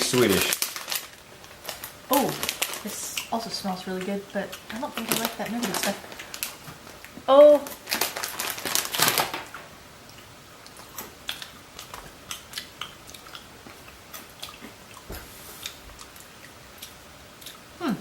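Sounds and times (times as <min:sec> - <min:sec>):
person chewing crunchy snack: 0:10.1 - 0:17.6.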